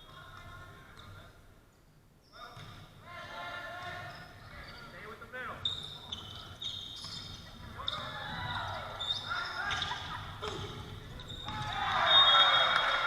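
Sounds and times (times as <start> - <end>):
shoe squeaks on court: 4.0 - 12.7
volleyball hits: 9.7 - 13.0
players and spectators shouting: 11.4 - 13.0.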